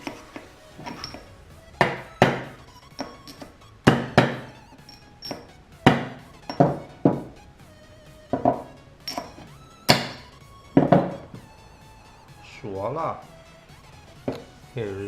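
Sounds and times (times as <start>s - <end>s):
hammer striking metal punch: 0.0s - 7.4s, 8.4s - 11.4s.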